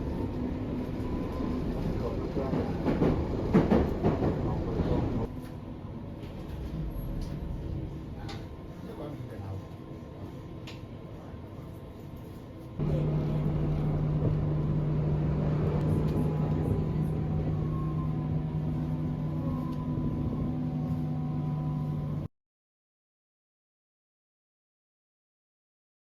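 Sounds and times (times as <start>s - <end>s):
vehicle low hum: 12.8s - 22.3s.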